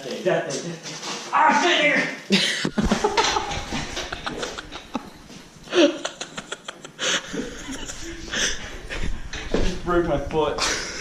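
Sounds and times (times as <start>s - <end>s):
young men laughing: 2.3s - 9.6s, 10.5s - 11.0s.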